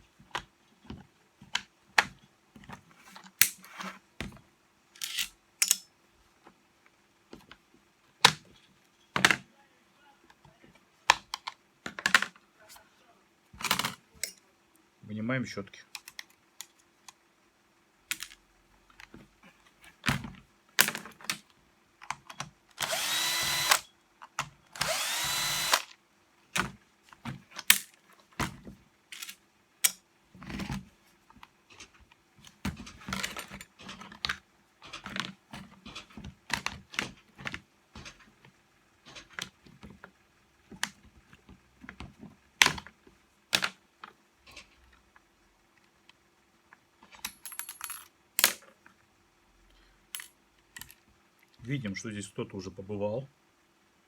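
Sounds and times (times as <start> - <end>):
small clicks and knocks: 16.0 - 17.2
power screwdriver whirring: 22.8 - 23.9, 24.8 - 25.9.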